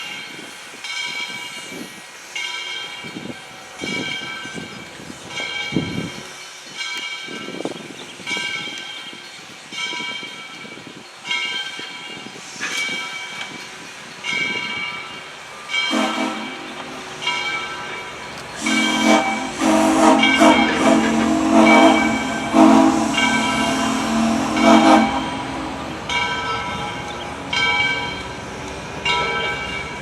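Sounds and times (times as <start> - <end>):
locomotive bell ringing: 8.2 - 30.0
steam whistle: 15.9 - 17.7, 18.6 - 27.3.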